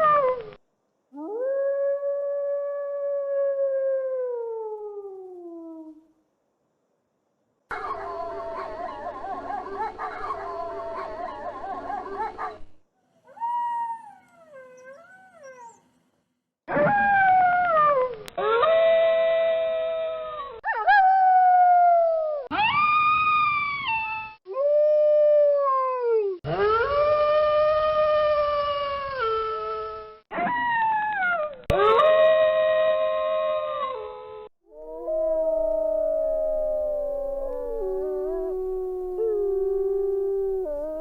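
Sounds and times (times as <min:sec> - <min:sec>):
wolves howling: 0:34.8 - 0:41.0.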